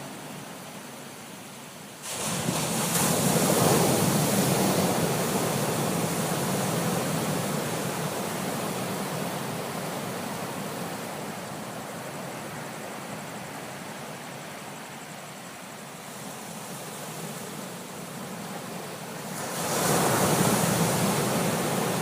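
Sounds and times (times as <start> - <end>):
ocean wave breaking: 2.0 - 11.0, 19.2 - 22.0
surf rushing: 2.0 - 11.8, 17.4 - 22.0.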